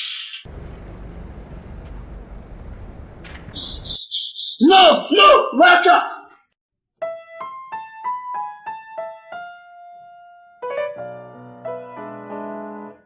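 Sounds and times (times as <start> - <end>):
piano melody and chords: 7.0 - 13.0.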